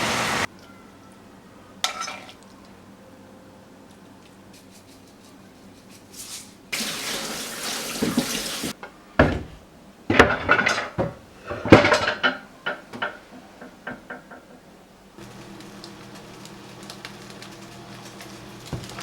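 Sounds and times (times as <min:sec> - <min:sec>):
kitchen tap running: 0:00.0 - 0:00.5, 0:06.7 - 0:08.8, 0:15.2 - 0:19.0
dishes clattering in sink: 0:01.9 - 0:02.4, 0:06.8 - 0:14.6.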